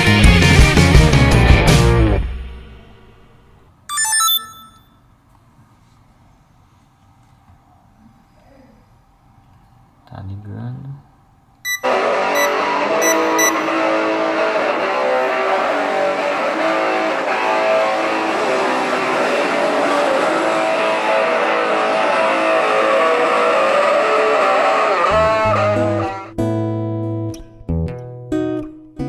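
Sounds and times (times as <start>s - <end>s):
strummed guitar music: 11.8s - 29.0s.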